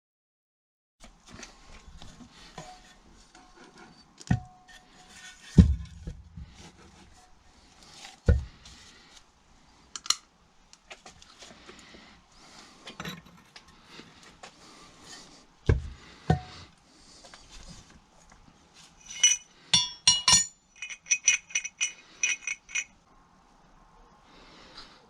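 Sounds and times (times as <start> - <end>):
metal parts and tools clinking: 19.0 - 23.0.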